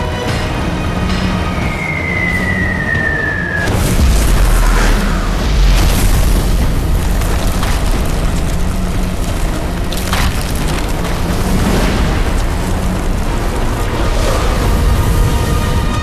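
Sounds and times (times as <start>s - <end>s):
rumble of booming explosions: 3.7s - 15.4s.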